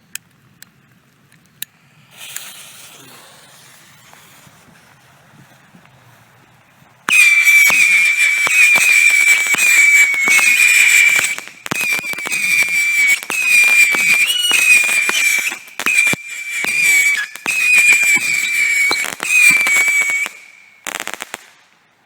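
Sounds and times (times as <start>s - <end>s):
soft hiss: 0.0s - 22.0s
high-pitched missile whistle: 2.0s - 4.8s, 7.1s - 21.2s
rapid sharp cracks: 7.1s - 21.8s.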